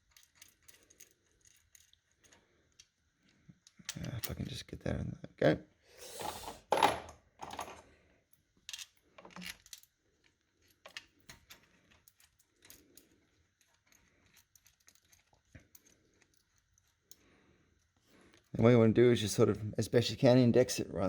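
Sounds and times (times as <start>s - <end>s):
metal parts clicking and tapping: 0.0s - 2.9s, 3.6s - 4.6s, 8.6s - 17.2s.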